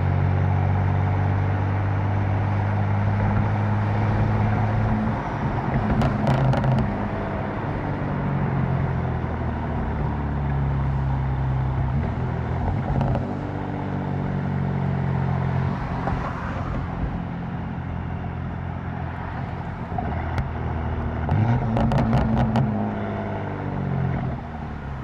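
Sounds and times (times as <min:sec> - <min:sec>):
car engine running: 0:01.6 - 0:16.0, 0:17.0 - 0:25.0
exhaust cracks: 0:05.7 - 0:07.0, 0:21.2 - 0:22.8.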